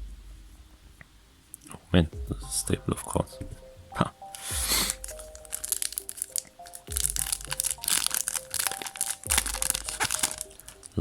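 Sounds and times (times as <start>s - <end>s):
background music: 0.0s - 11.0s
foil wrapper crinkling and tearing: 4.3s - 11.0s.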